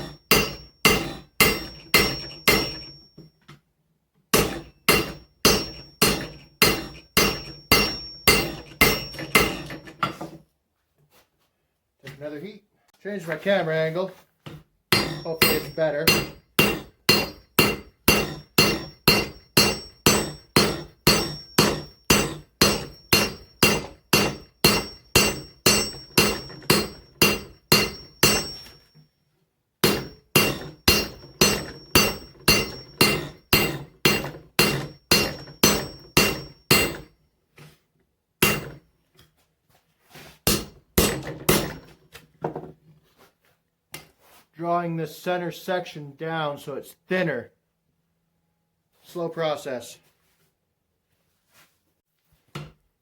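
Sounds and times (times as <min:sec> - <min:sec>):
hammer striking steel on anvil: 0:00.0 - 0:03.2, 0:04.3 - 0:10.3, 0:14.9 - 0:28.9, 0:29.8 - 0:37.1, 0:38.4 - 0:38.8, 0:40.5 - 0:41.9.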